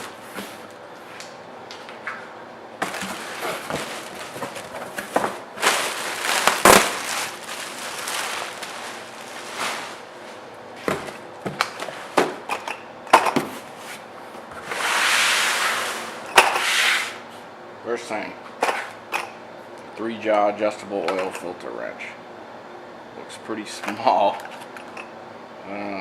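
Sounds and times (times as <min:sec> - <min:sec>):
cardboard box being opened: 0:02.8 - 0:10.0
packing material crinkling: 0:02.8 - 0:10.4.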